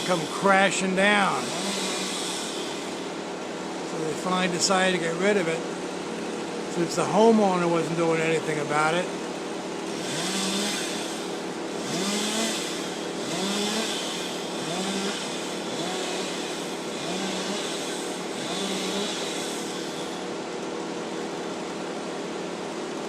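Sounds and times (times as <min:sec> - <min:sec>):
chainsaw cutting hiss: 0:00.0 - 0:03.3, 0:09.9 - 0:20.3
chainsaw revving: 0:00.0 - 0:04.8, 0:09.7 - 0:20.4.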